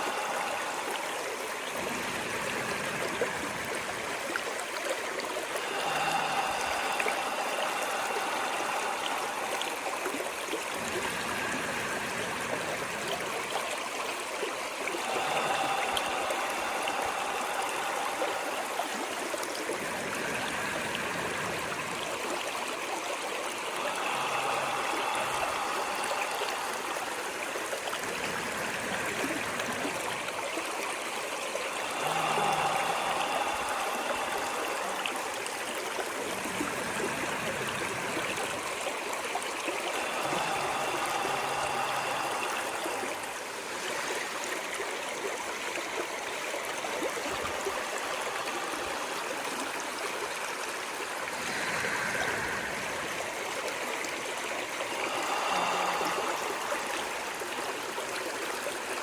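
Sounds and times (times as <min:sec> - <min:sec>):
stream water rushing: 0:00.0 - 0:59.0.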